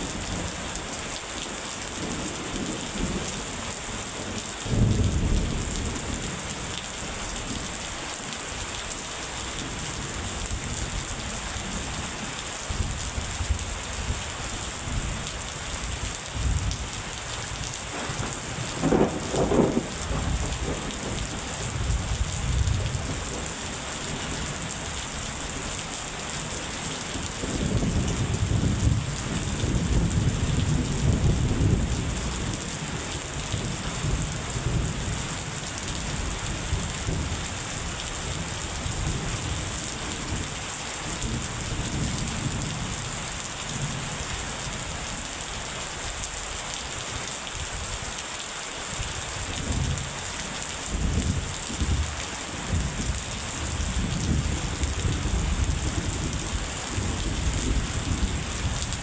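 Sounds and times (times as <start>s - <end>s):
steady rain: 0.0s - 59.0s
thunder rumbling: 17.6s - 25.2s.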